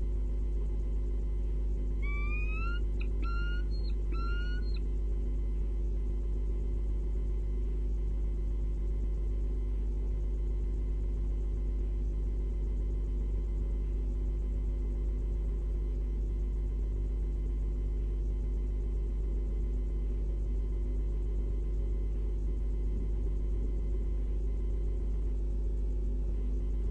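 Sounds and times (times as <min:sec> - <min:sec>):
low electrical hum: 0:00.0 - 0:26.9.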